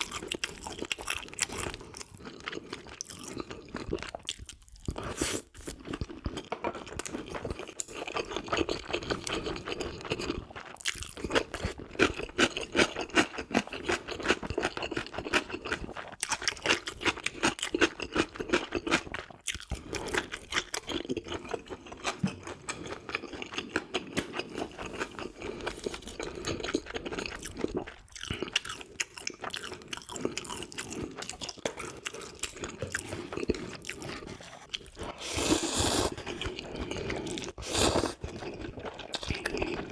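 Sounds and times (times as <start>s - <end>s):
chewing food crunches: 0.0s - 39.9s
wet mouth sounds: 23.9s - 39.9s.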